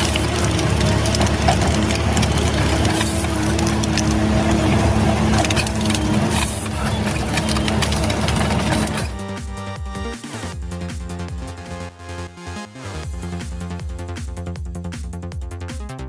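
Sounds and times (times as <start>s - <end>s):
material crackling and crunching: 0.0s - 9.2s
heavy machine engine running: 0.0s - 9.4s.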